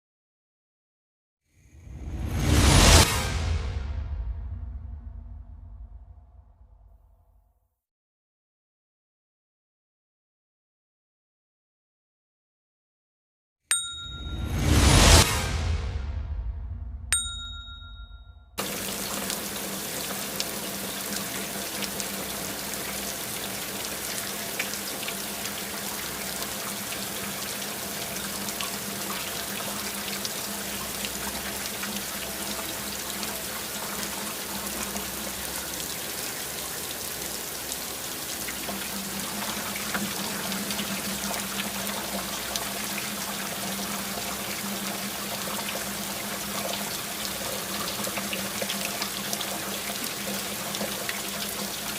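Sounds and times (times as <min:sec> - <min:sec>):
heavy rain falling: 0:18.6 - 0:51.9.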